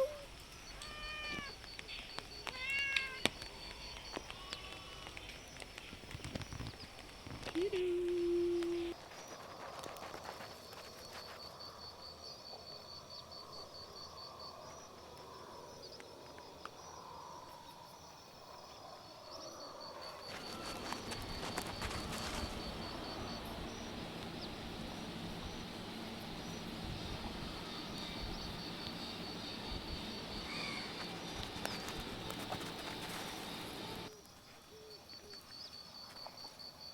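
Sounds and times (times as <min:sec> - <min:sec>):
rapidly pulsing insect chirp: 0:00.0 - 0:36.9
faint ticks: 0:00.4 - 0:09.0
low bird calls: 0:20.3 - 0:34.1
soft steady hiss: 0:20.3 - 0:34.7
steady rain: 0:20.4 - 0:34.1.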